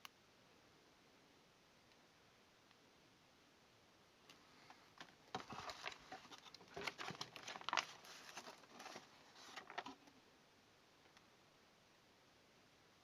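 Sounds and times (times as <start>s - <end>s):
packaging crinkling and rustling: 5.0s - 10.2s.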